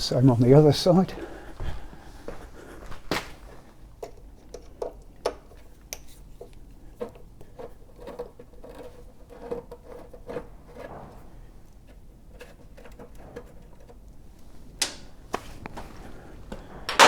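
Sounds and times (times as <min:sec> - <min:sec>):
hand tools clicking and knocking: 0:04.0 - 0:10.4, 0:14.8 - 0:17.0.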